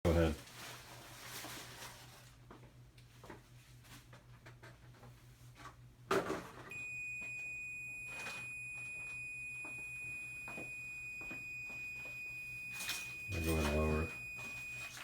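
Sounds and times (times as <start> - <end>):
high-pitched electronic beep: 6.8 - 15.0.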